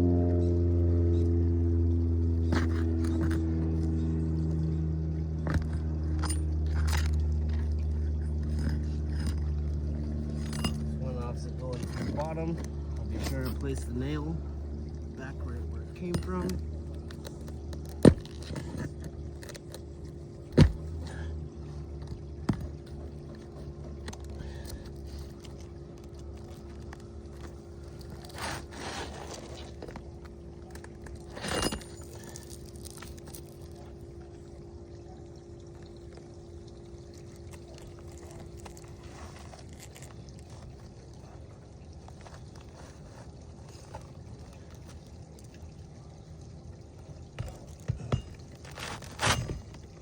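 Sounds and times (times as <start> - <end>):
steady low hum: 0.0 - 50.0
scraping on shingle: 22.0 - 33.9, 47.4 - 50.0.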